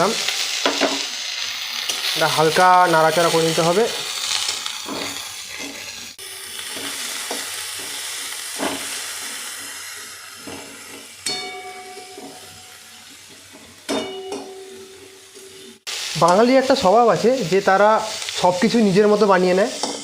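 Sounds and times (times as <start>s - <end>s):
vegetables sizzling in hot oil: 0.0s - 20.0s
spatula scraping a pan: 4.4s - 6.0s.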